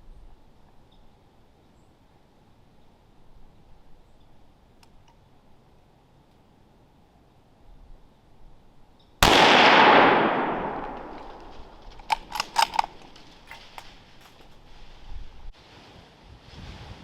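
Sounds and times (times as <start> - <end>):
rifle shot: 9.2 - 13.9
sharp clicks: 10.6 - 14.6.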